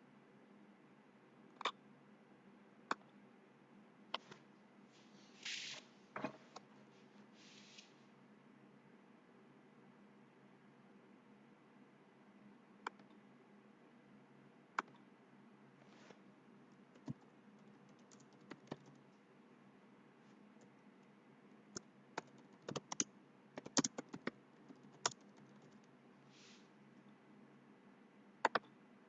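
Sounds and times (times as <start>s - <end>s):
faint low hum: 0.0s - 29.0s
keyboard and mouse clicks: 17.0s - 19.0s, 21.7s - 25.9s, 28.4s - 28.7s.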